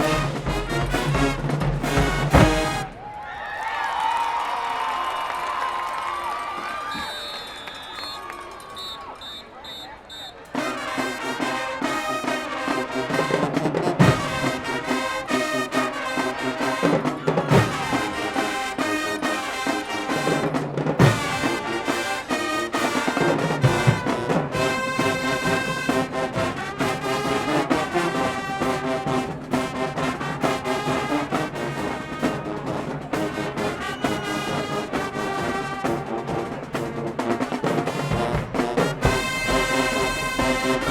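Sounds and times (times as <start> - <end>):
marching band brass: 0.0 - 40.9
heavy low drum hits: 0.1 - 3.0.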